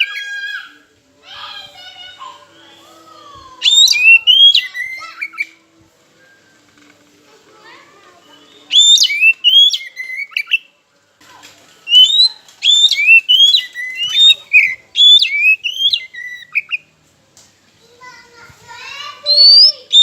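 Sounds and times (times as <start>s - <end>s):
bird singing whistled phrases: 3.6s - 5.6s, 8.3s - 10.7s, 11.9s - 16.9s, 19.2s - 20.0s.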